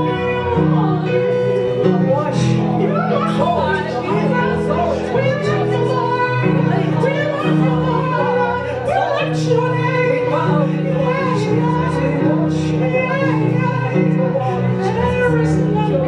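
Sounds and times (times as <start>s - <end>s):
instrumental held chords: 0.0s - 16.0s
worship singing: 0.0s - 16.0s.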